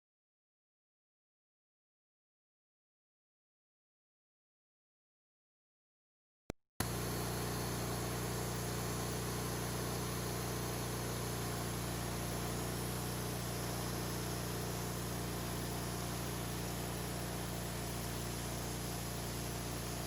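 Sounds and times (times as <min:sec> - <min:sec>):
sawmill engine running: 0:06.8 - 0:20.0.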